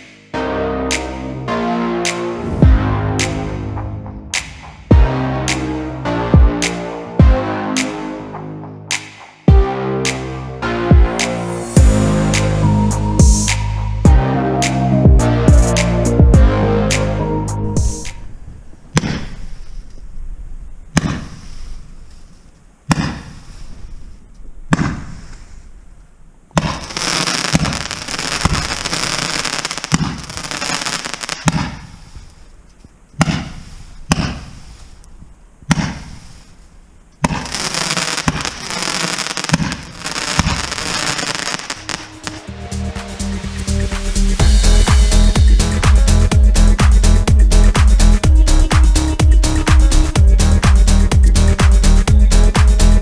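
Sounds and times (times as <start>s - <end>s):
fireworks dense crackling: 26.6s - 32.2s, 37.3s - 43.2s
fireworks sharp bangs: 37.2s - 42.4s.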